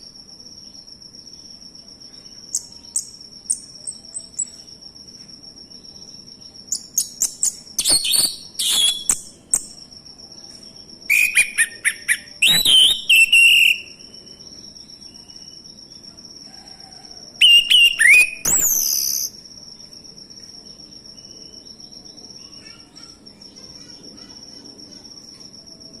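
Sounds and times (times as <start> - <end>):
high insect-like tone: 0.0 - 26.0
thrush singing whistled phrases: 7.0 - 9.3, 11.1 - 14.0, 17.4 - 19.3.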